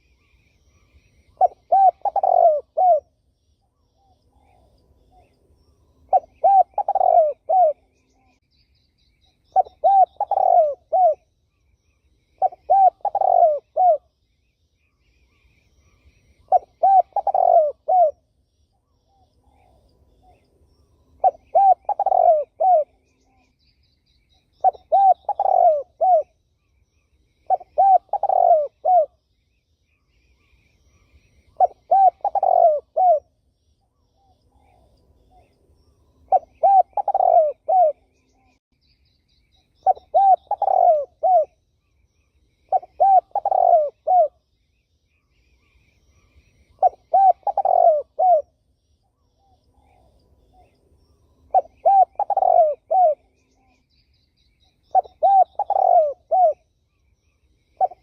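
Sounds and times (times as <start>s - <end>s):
dove cooing: 1.3s - 3.1s, 6.1s - 8.4s, 9.5s - 11.3s, 12.4s - 14.1s, 16.4s - 18.2s, 21.2s - 23.4s, 24.6s - 26.4s, 27.5s - 29.2s, 31.5s - 33.3s, 36.3s - 38.4s, 39.8s - 41.6s, 42.7s - 44.4s, 46.2s - 48.5s, 51.5s - 53.5s, 54.8s - 56.7s, 57.8s - 58.0s.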